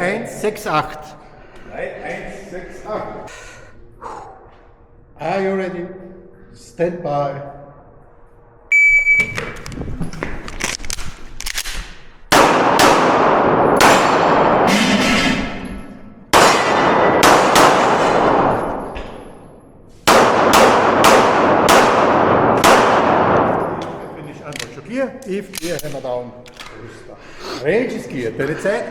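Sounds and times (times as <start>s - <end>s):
shot timer beep: 8.7s - 9.5s
handgun shots with echo: 11.5s - 15.6s, 16.3s - 18.8s, 20.1s - 24.0s.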